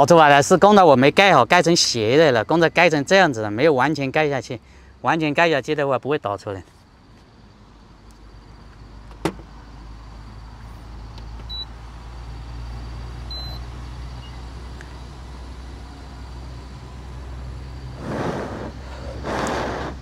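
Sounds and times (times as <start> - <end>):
low mechanical hum: 0.0 - 20.0
short breathy noise: 18.0 - 20.0.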